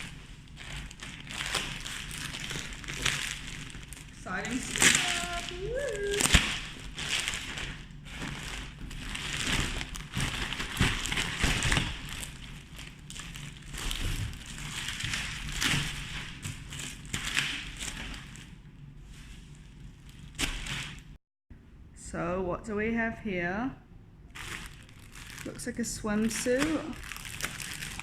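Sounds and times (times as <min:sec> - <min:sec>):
packaging tearing: 0:00.0 - 0:18.4, 0:24.4 - 0:28.0
packaging rustling and crinkling: 0:00.0 - 0:21.2, 0:24.3 - 0:28.0.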